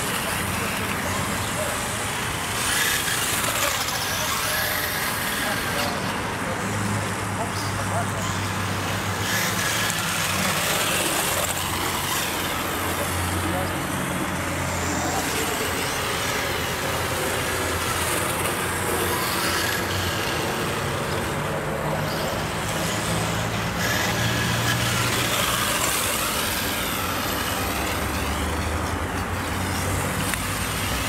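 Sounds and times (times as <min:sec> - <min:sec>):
electric motor whining: 0:00.0 - 0:31.0
steady noisy background: 0:00.0 - 0:31.0.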